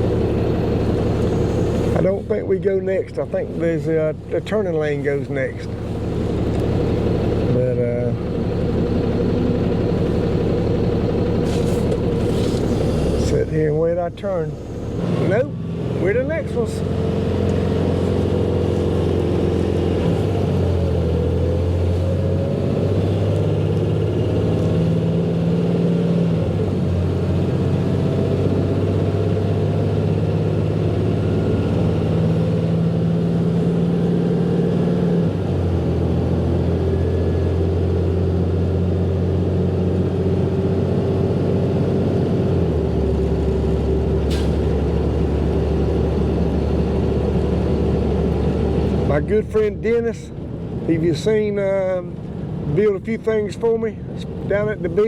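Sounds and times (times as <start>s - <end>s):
truck engine accelerating: 0.0s - 55.0s.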